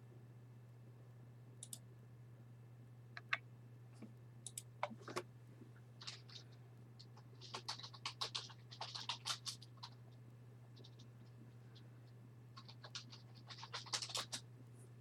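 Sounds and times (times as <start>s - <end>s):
low electrical hum: 0.0s - 15.0s
keyboard typing: 6.0s - 6.4s, 7.1s - 10.0s, 12.6s - 14.4s.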